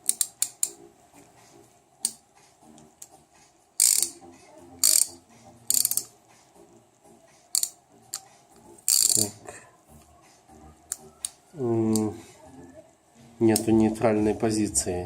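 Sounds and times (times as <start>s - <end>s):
ratchet handle clicking: 0.0s - 0.8s, 3.8s - 4.2s, 4.8s - 5.1s, 5.7s - 6.1s, 7.5s - 8.2s, 8.9s - 9.3s.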